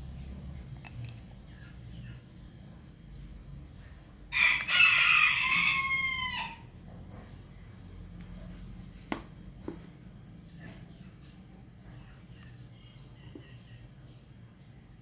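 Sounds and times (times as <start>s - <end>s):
rooster crowing: 4.3s - 6.7s.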